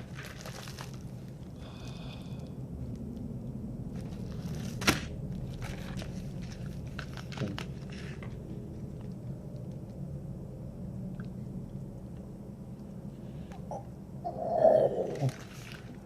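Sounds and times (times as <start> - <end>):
packaging rustling and clicking: 0.0 - 1.4, 4.0 - 8.4, 15.1 - 16.0
steady low hum: 0.0 - 16.0
packaging snapping: 4.0 - 8.4.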